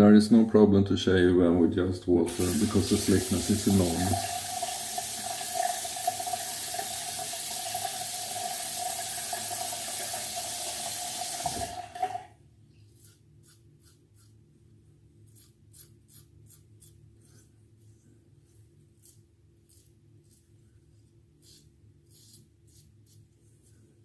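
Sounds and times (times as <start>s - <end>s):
bathroom tap running: 2.3s - 12.3s
razor scraping stubble: 12.9s - 14.4s, 15.3s - 17.5s, 18.9s - 20.6s, 21.4s - 23.3s.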